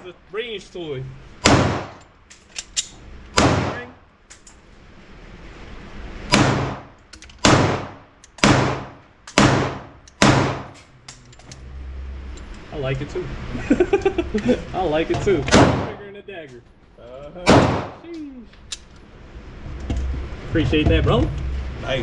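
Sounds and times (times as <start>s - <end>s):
pistol shots: 1.4s - 2.0s, 3.4s - 3.9s, 6.3s - 10.8s, 17.5s - 18.0s.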